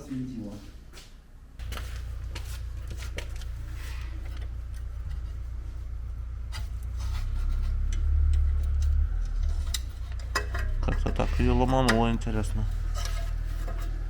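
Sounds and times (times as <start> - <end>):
steady low hum: 0.0 - 14.0
tools clicking and scraping: 6.5 - 14.0.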